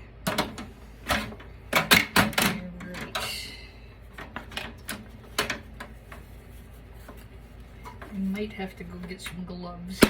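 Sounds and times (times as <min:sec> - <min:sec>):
computer case parts clacking: 0:00.2 - 0:03.3, 0:04.1 - 0:06.3.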